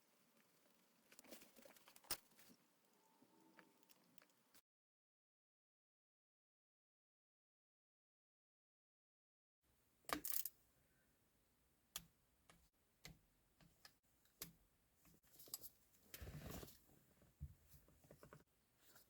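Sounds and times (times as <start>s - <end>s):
small parts and tools clicking: 10.1s - 10.6s.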